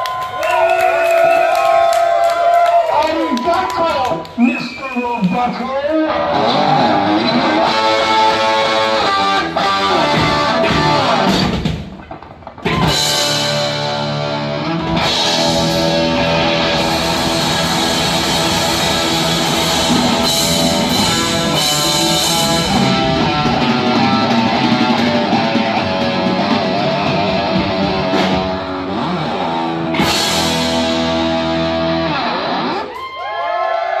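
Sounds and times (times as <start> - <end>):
heavy metal band playing live: 6.1 - 32.8.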